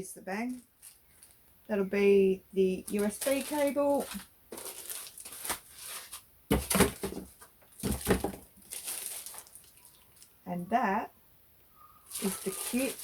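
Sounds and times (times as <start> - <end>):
packaging rustling and crinkling: 0.5 - 1.4, 2.8 - 10.4, 12.1 - 13.0.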